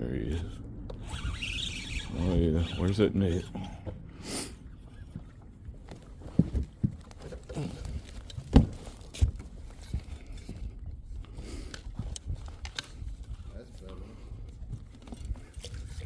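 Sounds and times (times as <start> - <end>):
knocks and thumps in a boat: 4.8 - 11.1
wind rumble on microphone: 8.6 - 16.0.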